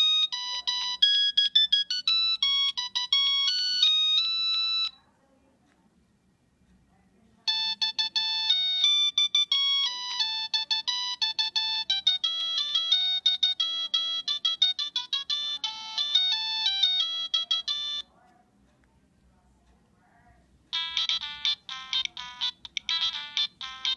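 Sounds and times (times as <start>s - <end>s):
cell phone ringtone beeping melody: 0.0s - 5.0s, 7.5s - 18.1s, 20.7s - 23.9s.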